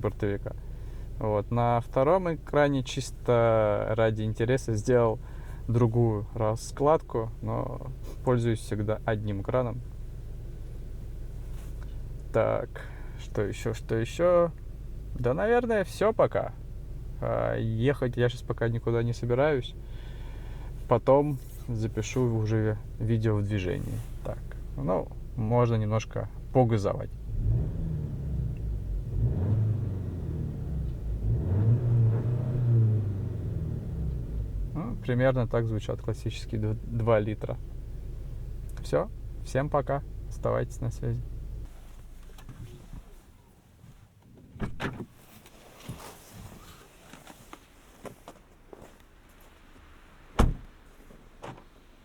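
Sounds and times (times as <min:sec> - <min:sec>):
car engine revving: 0:27.1 - 0:35.4
loud sharp thump: 0:44.6 - 0:45.1, 0:50.4 - 0:50.7
knocks and taps inside car: 0:50.4 - 0:50.7.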